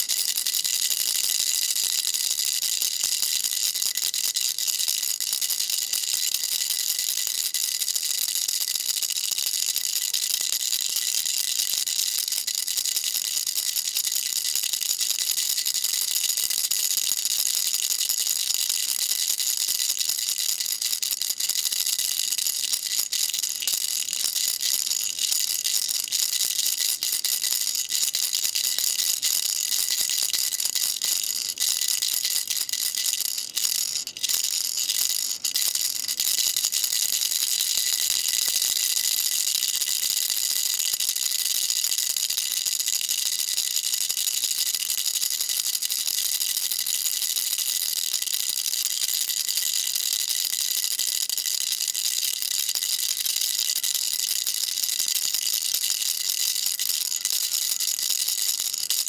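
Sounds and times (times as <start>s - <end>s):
baby rattle shaken: 17.6s - 44.8s, 45.4s - 59.0s.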